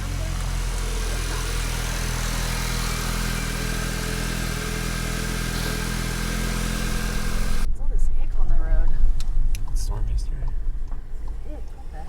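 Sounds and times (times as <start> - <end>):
car engine running steadily: 0.0 - 7.7.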